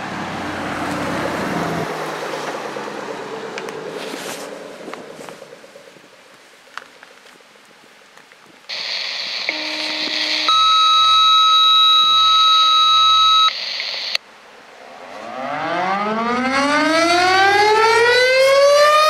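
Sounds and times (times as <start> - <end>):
scanner radio hiss: 8.7 - 14.2
two-tone radio page: 8.7 - 14.2.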